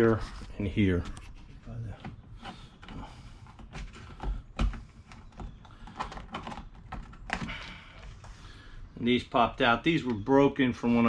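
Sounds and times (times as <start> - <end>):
plastic clicks and knocks: 2.0 - 7.7.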